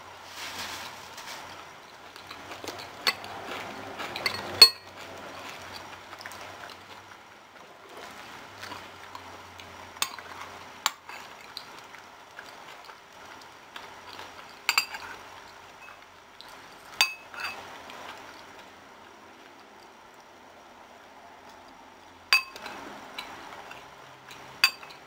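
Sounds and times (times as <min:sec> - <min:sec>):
utensil clinking and scraping dish: 0:00.3 - 0:06.9, 0:08.0 - 0:18.5, 0:22.4 - 0:25.0.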